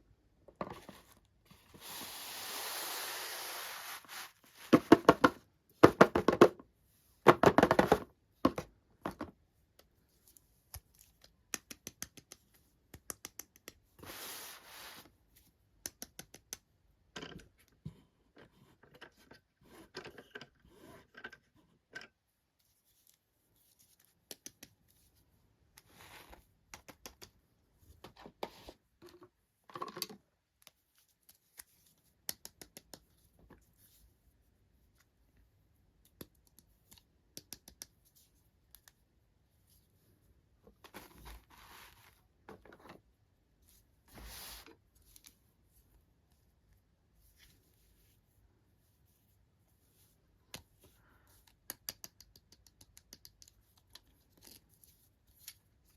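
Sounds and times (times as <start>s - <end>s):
small clicks and taps: 8.4s - 13.8s, 15.8s - 17.8s, 24.0s - 25.0s, 26.7s - 27.4s, 29.0s - 33.6s, 36.0s - 38.0s, 51.4s - 54.6s.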